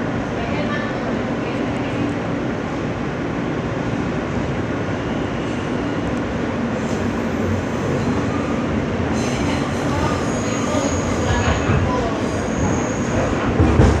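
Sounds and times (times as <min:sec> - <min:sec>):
subway car rumble: 0:00.0 - 0:14.0
high wheel squeal: 0:12.2 - 0:13.4.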